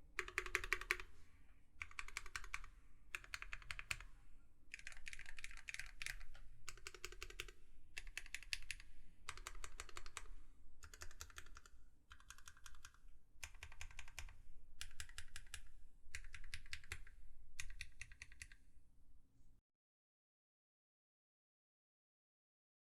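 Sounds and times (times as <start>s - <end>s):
mechanical keyboard typing: 0.2s - 1.1s, 1.8s - 4.1s, 4.7s - 18.6s.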